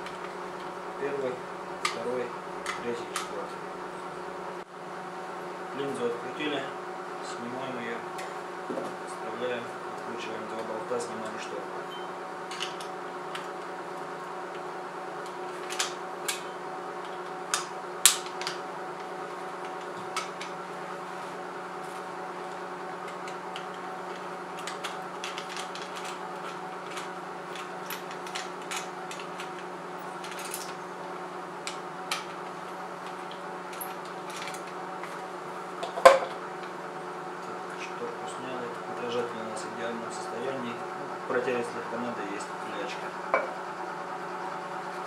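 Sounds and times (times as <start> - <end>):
steady background hum: 0.0 - 45.0
small tools clicking and tapping: 23.1 - 29.6, 33.0 - 35.2.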